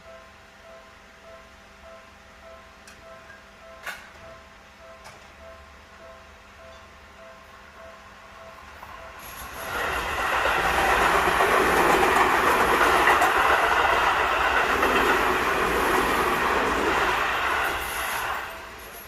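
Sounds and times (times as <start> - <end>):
train wheels clattering over rails: 8.7 - 19.0.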